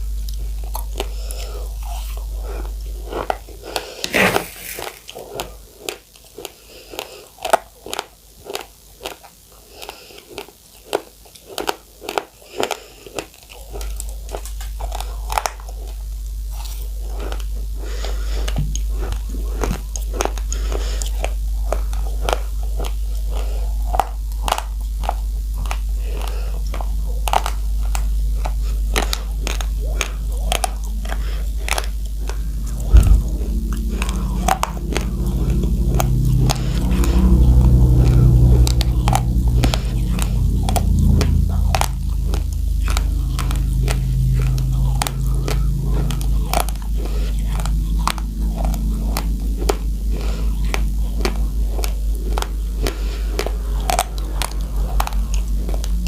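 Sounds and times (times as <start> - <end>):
chewing crunchy rice: 0.0 - 56.0
steady low hum: 0.0 - 56.0
low murmur: 13.6 - 56.0.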